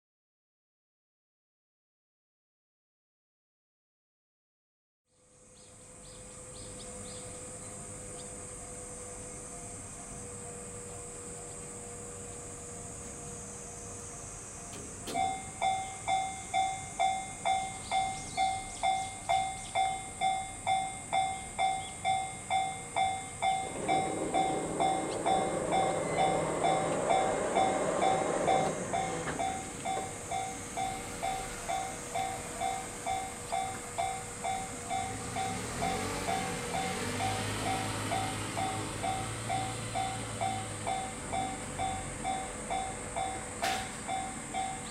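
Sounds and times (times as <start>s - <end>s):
train rumbling past: 5.3s - 44.9s
level crossing warning bell: 6.4s - 13.7s, 15.1s - 44.9s.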